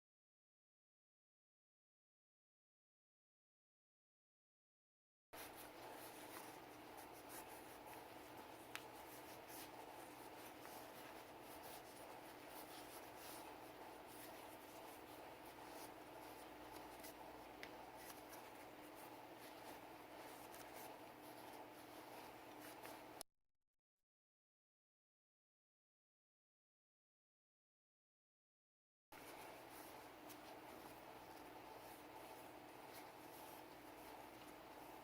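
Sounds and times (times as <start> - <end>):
scratching and rubbing: 5.4 - 23.2, 29.2 - 35.0.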